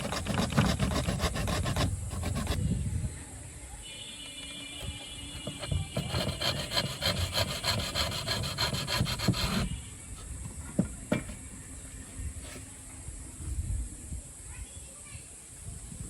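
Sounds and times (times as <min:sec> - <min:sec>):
wood being sanded by hand: 0:00.0 - 0:02.7, 0:05.4 - 0:09.8.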